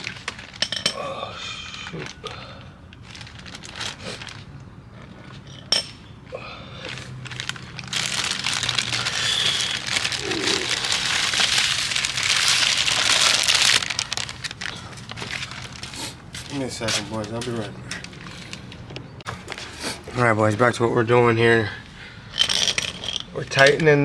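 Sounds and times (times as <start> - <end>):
plastic bag crinkling: 3.0 - 4.6, 7.0 - 18.5.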